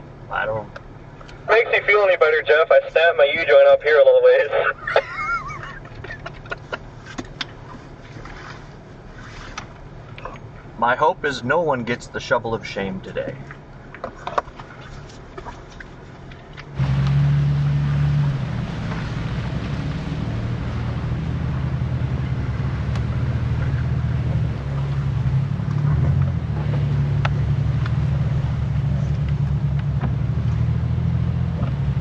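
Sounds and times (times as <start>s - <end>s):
off-road truck engine running: 0.0s - 8.0s, 15.5s - 32.0s.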